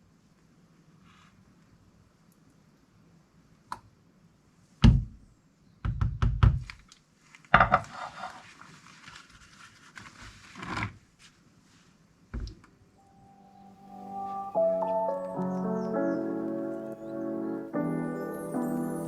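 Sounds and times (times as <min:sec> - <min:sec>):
rough scraping and rustling: 0:07.8 - 0:12.0.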